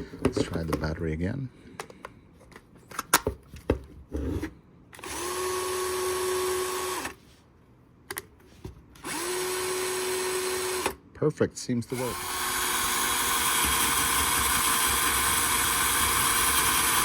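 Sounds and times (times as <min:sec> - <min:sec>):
cordless screwdriver motor spinning: 0:05.0 - 0:07.2, 0:09.0 - 0:11.0, 0:11.9 - 0:17.0.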